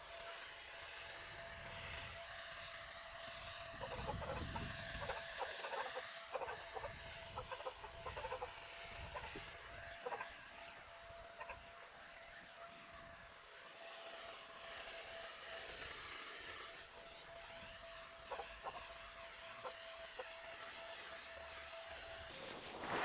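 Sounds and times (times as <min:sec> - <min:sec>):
paint spray gun humming: 0:22.3 - 0:23.0.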